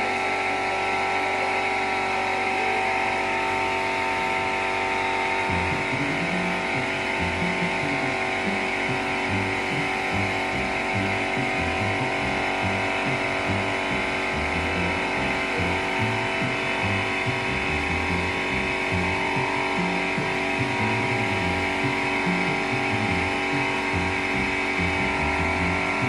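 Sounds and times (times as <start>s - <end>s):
compressor humming and hissing: 0.0s - 26.0s
music with bass line: 5.2s - 26.0s.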